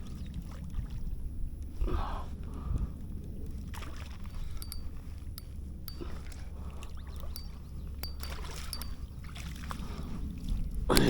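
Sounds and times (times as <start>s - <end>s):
wind: 0.0s - 11.0s
water rumbling: 3.4s - 11.0s
sharp light clicks: 4.3s - 9.1s.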